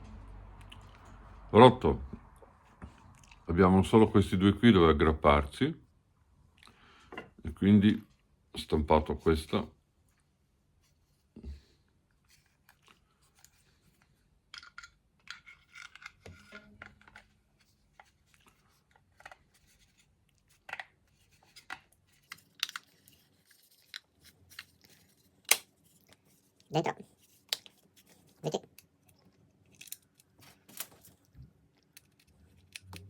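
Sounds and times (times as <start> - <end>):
rustling and scraping: 10.0 - 14.4, 15.2 - 28.4
plastic parts clicking: 29.7 - 31.0, 31.8 - 33.0.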